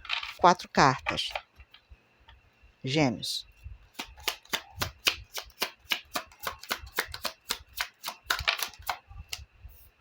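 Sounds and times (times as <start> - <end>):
cards being shuffled: 3.9 - 9.4.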